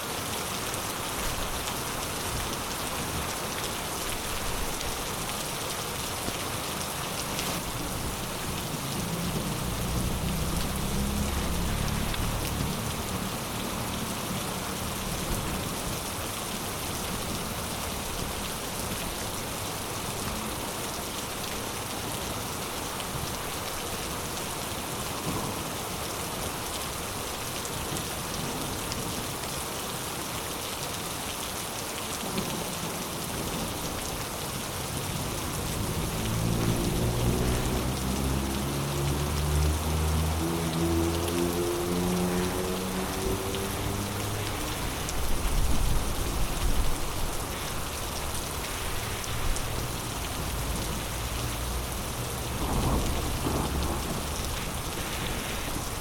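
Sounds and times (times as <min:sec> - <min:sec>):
heavy rain falling: 0:00.0 - 0:56.0
low thunder rumble: 0:52.5 - 0:56.0.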